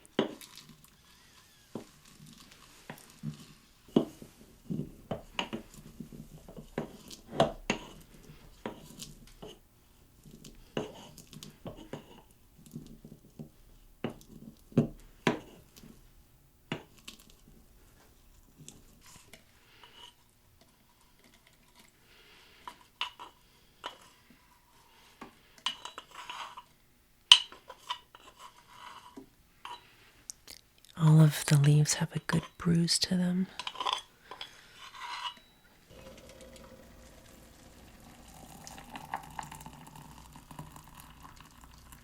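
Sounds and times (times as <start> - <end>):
utensil clinking against a mug: 35.2 - 42.0.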